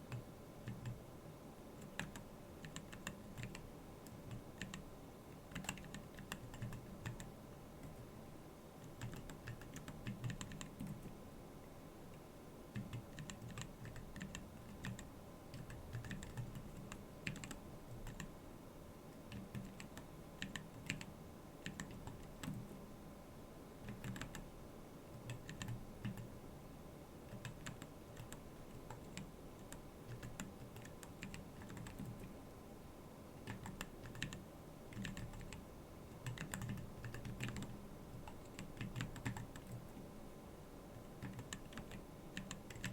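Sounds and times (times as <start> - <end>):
keyboard typing clicks: 0.1 - 1.0, 1.8 - 4.8, 5.4 - 8.0, 8.8 - 11.1, 12.8 - 18.3, 19.3 - 22.8, 23.9 - 24.4, 25.2 - 26.3, 27.3 - 32.3, 33.4 - 35.6, 36.2 - 39.9, 41.2 - 42.9.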